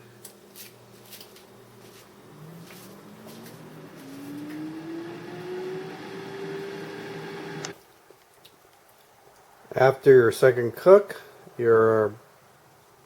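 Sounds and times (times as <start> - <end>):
air fryer fan humming: 1.6 - 7.8.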